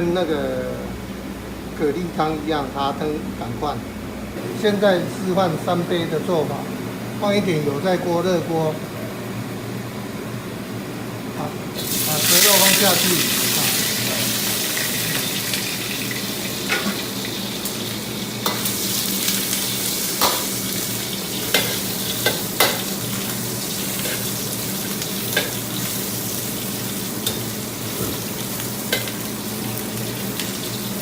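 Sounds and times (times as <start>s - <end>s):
meat sizzling in oil: 11.8s - 31.0s.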